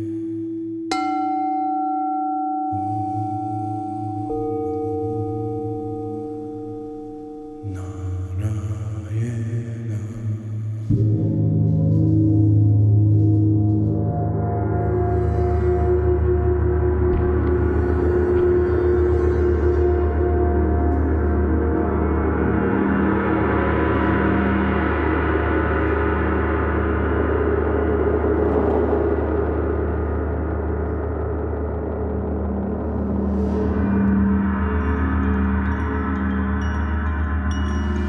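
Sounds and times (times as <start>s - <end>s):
gong ringing: 0.0s - 9.2s.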